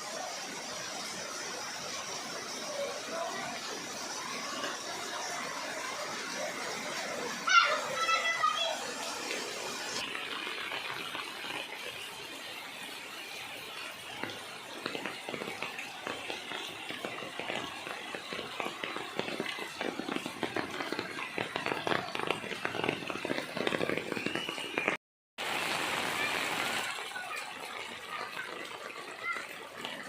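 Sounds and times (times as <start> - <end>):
rain falling: 0.0 - 30.0
children's voices playing: 7.3 - 10.0, 26.0 - 30.0.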